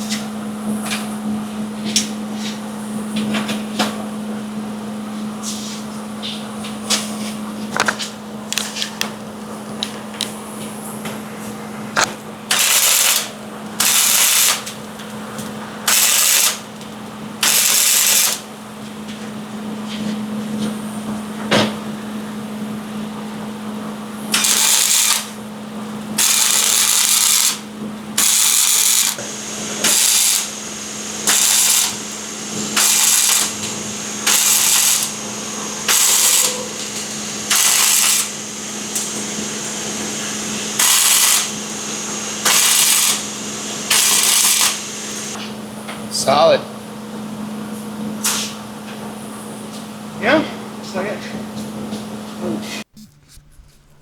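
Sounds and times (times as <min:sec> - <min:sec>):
welding arc crackling: 0:12.5 - 0:14.7, 0:15.9 - 0:16.7, 0:17.4 - 0:18.4, 0:24.3 - 0:25.4, 0:26.2 - 0:45.4.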